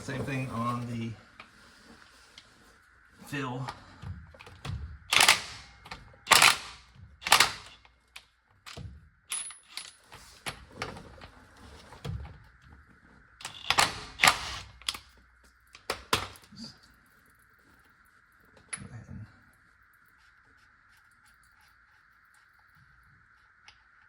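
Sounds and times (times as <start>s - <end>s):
impact wrench bursts: 5.1s - 5.7s, 6.3s - 7.8s, 13.4s - 14.8s
tools clicking and clinking: 5.1s - 10.2s, 13.4s - 15.1s.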